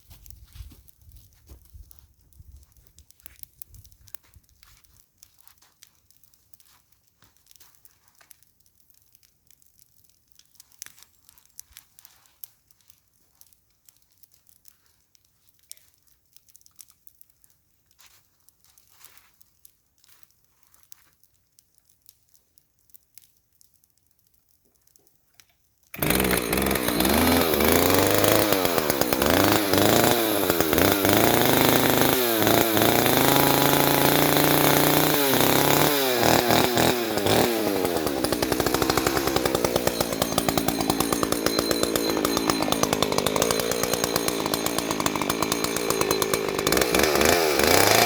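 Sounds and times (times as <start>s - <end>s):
faint crunching and crackling: 0.0s - 26.0s.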